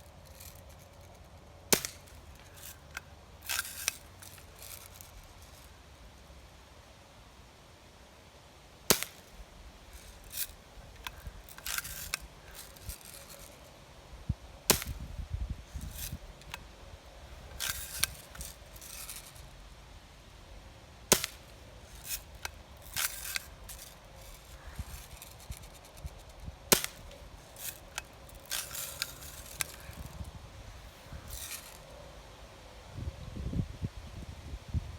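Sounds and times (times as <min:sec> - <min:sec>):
gun handling clicks and rattles: 0:00.1 - 0:05.7, 0:08.9 - 0:13.7, 0:15.7 - 0:16.6, 0:17.4 - 0:19.5, 0:21.1 - 0:30.3, 0:31.2 - 0:31.9.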